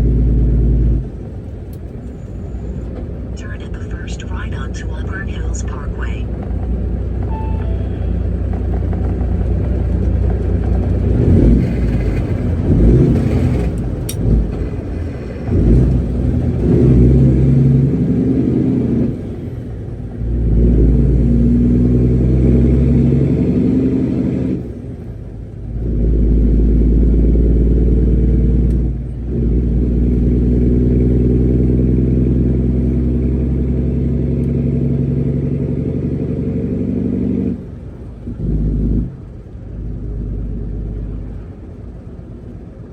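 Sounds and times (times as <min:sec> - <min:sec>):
truck diesel engine revving: 0:02.6 - 0:24.6.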